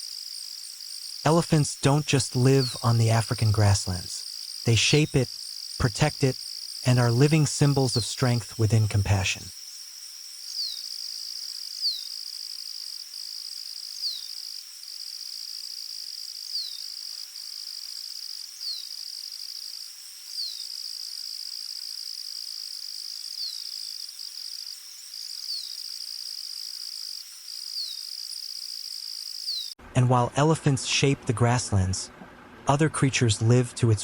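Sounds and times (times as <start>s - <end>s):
insects trilling: 0.0s - 29.8s.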